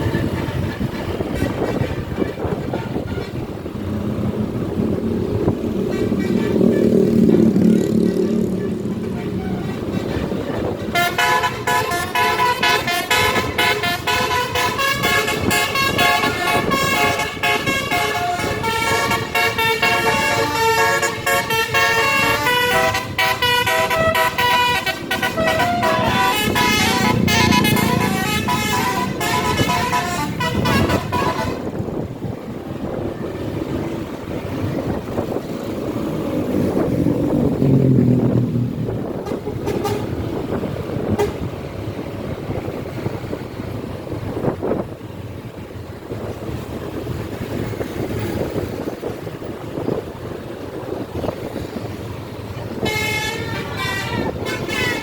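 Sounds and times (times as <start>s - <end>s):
road and engine noise: 0.0s - 55.0s
musical bus horn playing a tune: 10.9s - 31.8s, 39.2s - 40.4s, 41.1s - 41.5s, 52.7s - 55.0s.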